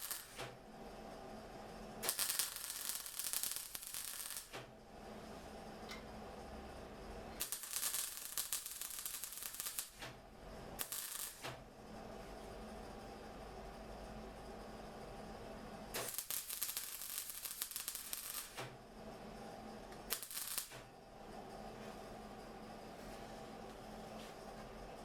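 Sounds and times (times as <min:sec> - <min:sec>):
welder arc crackling: 0:00.0 - 0:00.5, 0:02.0 - 0:04.7, 0:07.4 - 0:10.2, 0:10.8 - 0:11.6, 0:15.9 - 0:18.7, 0:20.1 - 0:20.9
steady low hum: 0:00.0 - 0:25.0.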